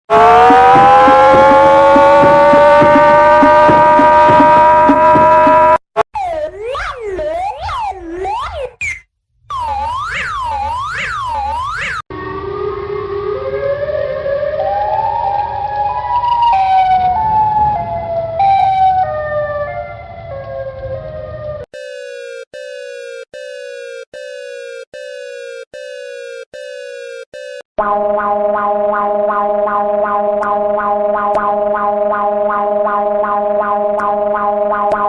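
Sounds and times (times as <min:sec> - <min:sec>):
steady electronic chord: 0:00.1 - 0:05.8, 0:27.8 - 0:35.0
stepped alarm tone melody: 0:00.1 - 0:06.4, 0:09.5 - 0:17.4, 0:21.8 - 0:35.0
wailing siren sweep: 0:00.1 - 0:06.4, 0:09.5 - 0:35.0
falling electronic beep: 0:08.3 - 0:12.0.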